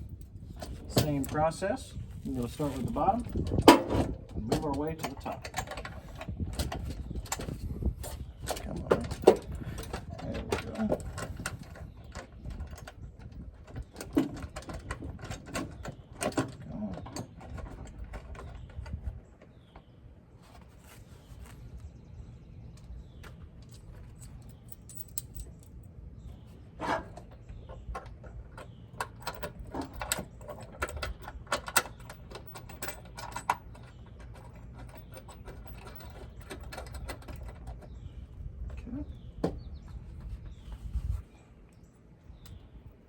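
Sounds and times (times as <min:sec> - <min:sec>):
metal bolts clicking and scraping: 0:00.1 - 0:19.0, 0:23.6 - 0:25.9, 0:26.7 - 0:37.9.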